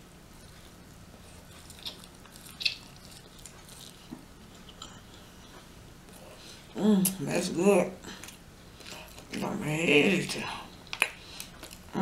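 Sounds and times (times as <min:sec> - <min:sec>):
wet chewing smacks: 0:00.4 - 0:06.3.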